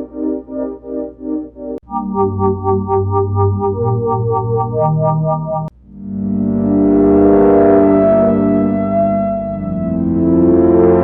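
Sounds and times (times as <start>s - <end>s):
synthesizer chord loop: 0.0s - 11.0s.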